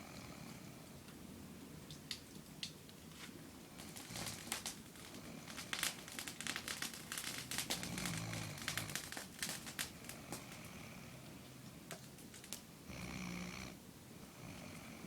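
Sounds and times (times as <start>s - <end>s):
crinkling crackle: 1.9s - 12.7s.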